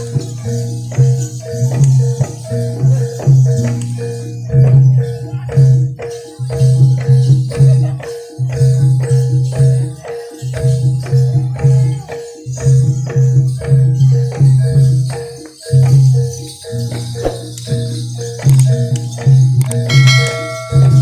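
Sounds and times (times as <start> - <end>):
gamelan ensemble playing: 13.0 - 21.0.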